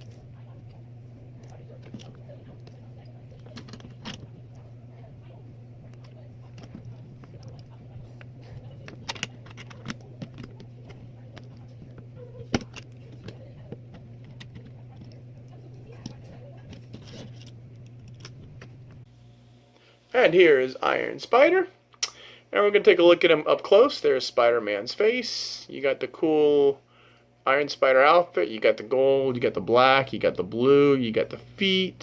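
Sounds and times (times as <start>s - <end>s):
steady low hum: 0.0s - 32.0s.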